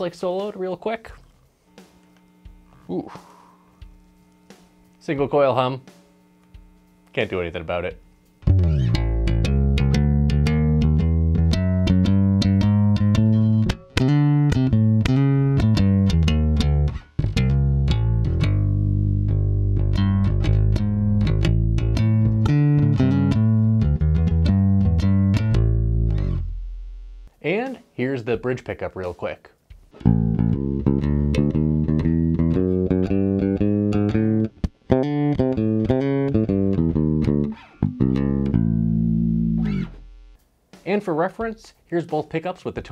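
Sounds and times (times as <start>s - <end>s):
plucked bass guitar notes: 7.3s - 27.3s, 30.0s - 40.4s.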